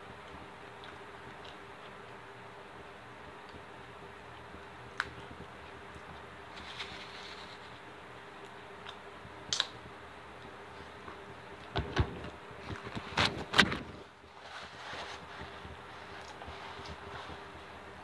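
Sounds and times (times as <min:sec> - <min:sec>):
faint room hum: 0:00.0 - 0:18.0
crunches of chewing food: 0:00.1 - 0:09.7.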